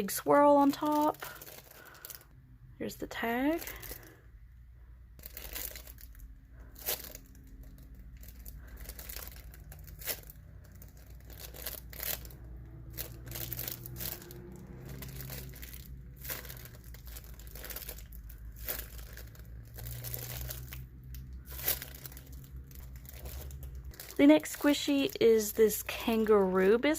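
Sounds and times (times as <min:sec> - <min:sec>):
squishy crinkling and rustling: 0:00.0 - 0:26.9.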